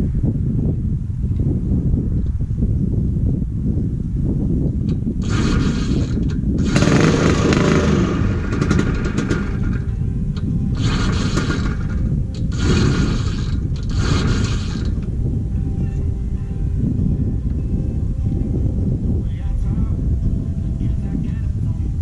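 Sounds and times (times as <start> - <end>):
snowmobile engine revving: 5.2 - 9.8, 10.8 - 15.0.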